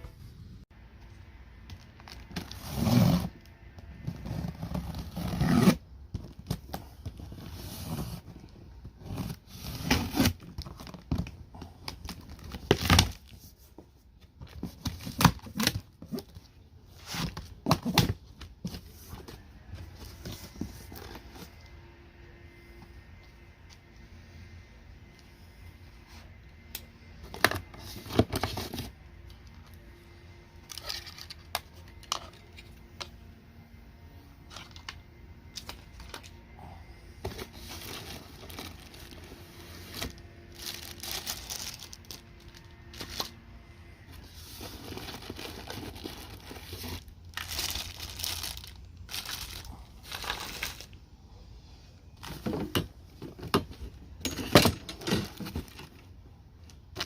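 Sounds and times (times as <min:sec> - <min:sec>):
packaging torn and crinkled: 0:40.0 - 0:43.3, 0:45.0 - 0:51.0.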